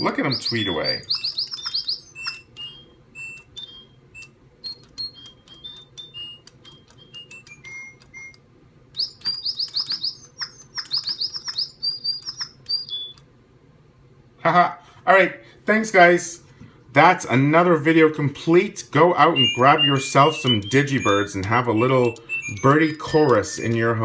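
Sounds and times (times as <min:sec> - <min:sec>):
electronic toy birds tweeting: 0:00.0 - 0:13.3, 0:18.5 - 0:24.0.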